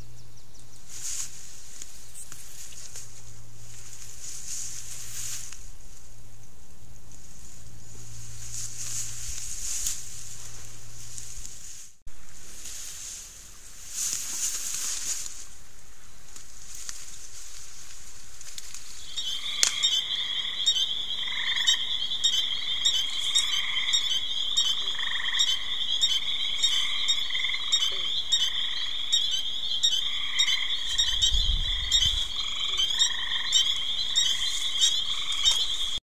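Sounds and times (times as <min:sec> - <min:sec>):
low rumble: 0:02.8 - 0:13.9, 0:25.6 - 0:36.0
frogs calling: 0:19.0 - 0:36.0.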